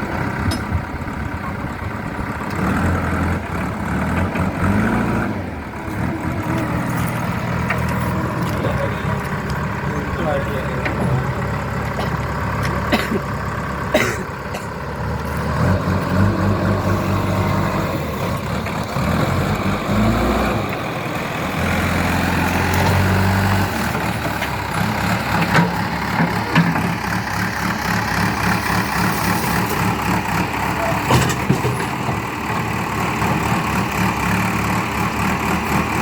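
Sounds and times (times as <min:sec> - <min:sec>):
diesel engine working under load: 0:00.0 - 0:36.0.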